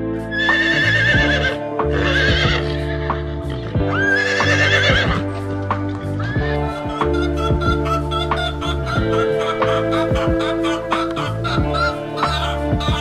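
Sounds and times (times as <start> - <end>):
background music: 0.0 - 13.0
horse whinnying: 0.3 - 2.8, 3.6 - 5.4.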